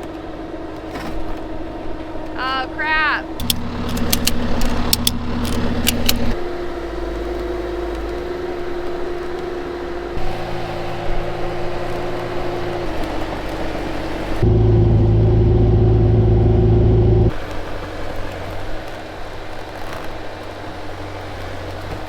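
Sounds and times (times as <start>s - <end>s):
skid steer engine under load: 3.3s - 22.0s
sharp clicks or rattles: 3.4s - 6.4s.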